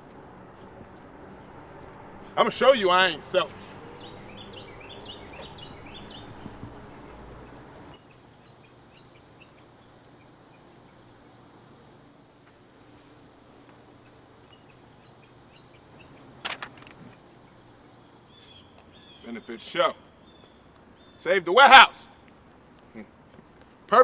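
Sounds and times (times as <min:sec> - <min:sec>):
thin steady high whine: 0:00.0 - 0:18.4
faint chirping insects: 0:00.0 - 0:24.0.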